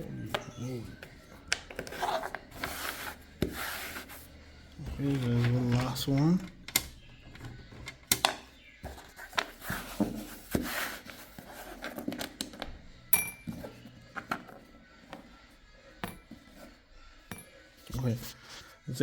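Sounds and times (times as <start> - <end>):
short ringing clink: 13.1 - 13.5.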